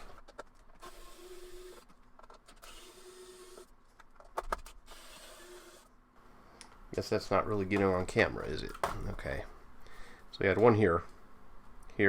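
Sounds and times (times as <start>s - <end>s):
electric screwdriver motor: 0.8s - 1.8s, 2.6s - 3.7s, 4.8s - 5.9s.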